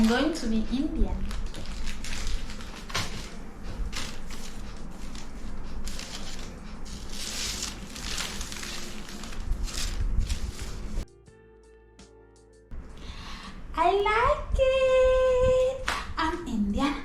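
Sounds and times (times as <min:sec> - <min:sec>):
rustling and crinkling material: 0:00.0 - 0:11.0.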